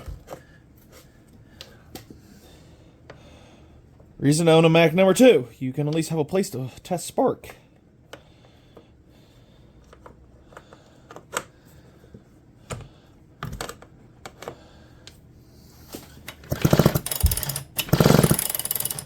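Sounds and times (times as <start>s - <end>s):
chainsaw recoil starter pulls: 16.3s - 19.0s
handling clicks and knocks: 16.3s - 19.0s.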